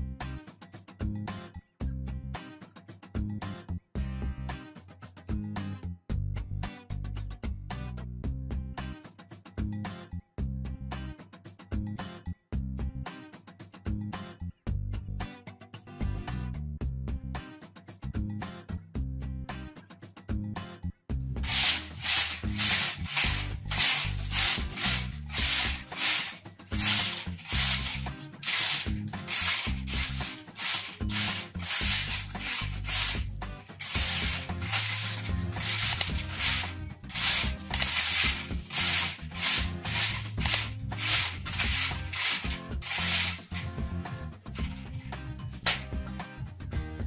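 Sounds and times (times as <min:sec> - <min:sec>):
rhythmic rubbing strokes: 0:21.4 - 0:43.8.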